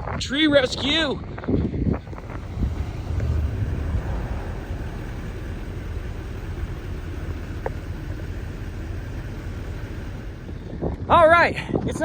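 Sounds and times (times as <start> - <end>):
wind buffeting microphone: 0.0 - 12.0.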